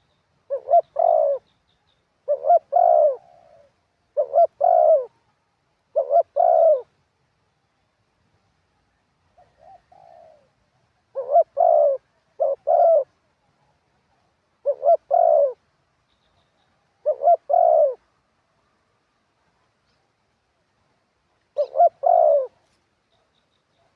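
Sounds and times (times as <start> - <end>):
dove cooing: 0.0 - 1.5, 2.2 - 5.2, 5.9 - 7.0, 9.4 - 13.2, 14.2 - 15.6, 16.4 - 18.1, 21.5 - 23.9.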